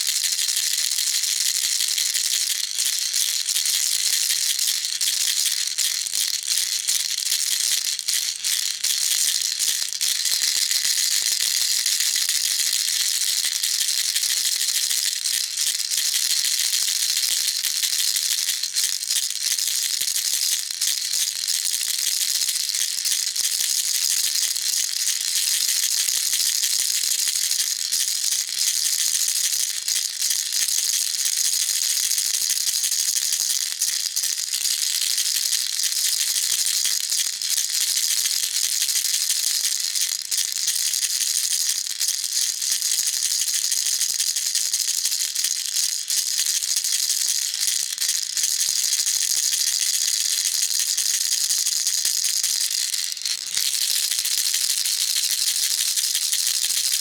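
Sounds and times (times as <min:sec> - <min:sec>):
baby rattle shaken: 0:00.0 - 0:57.0.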